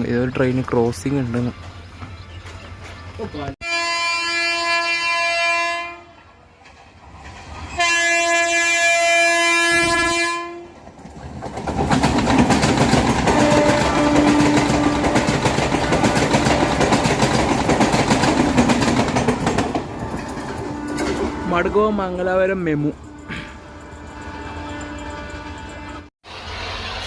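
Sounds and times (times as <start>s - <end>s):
train horn blasts: 3.6s - 6.3s, 7.8s - 10.8s, 13.3s - 15.4s, 20.6s - 21.9s, 23.0s - 26.1s
train rushing past: 6.3s - 27.0s
wheels clattering over rail joints: 10.8s - 22.6s.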